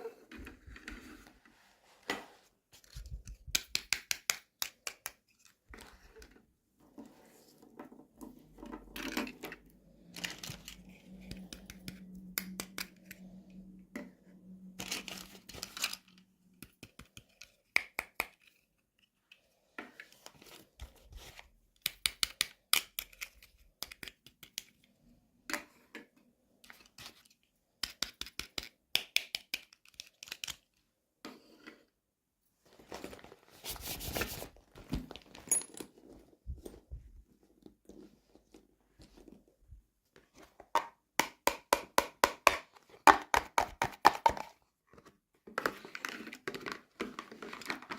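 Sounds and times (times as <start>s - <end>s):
plastic and card tearing and crinkling: 14.8s - 16.3s, 32.8s - 35.4s.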